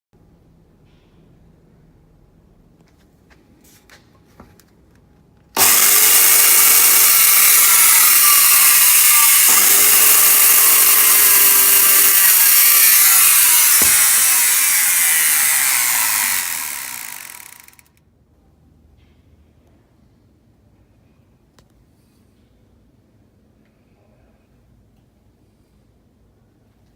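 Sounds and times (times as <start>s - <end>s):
circular saw running: 5.6s - 17.9s.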